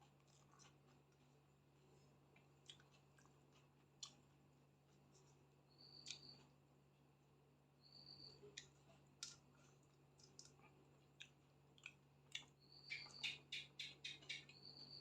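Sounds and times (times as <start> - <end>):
person eating with mouth clicks: 2.4 - 4.2, 8.5 - 14.5.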